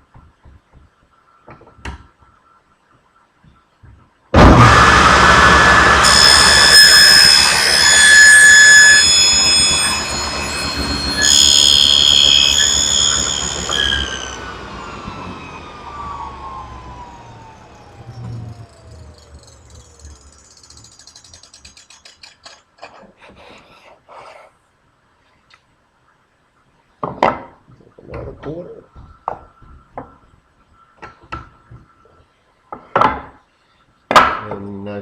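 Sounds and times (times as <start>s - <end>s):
table saw cutting wood: 4.4s - 21.6s
saw blade whine coasting down: 4.4s - 21.9s.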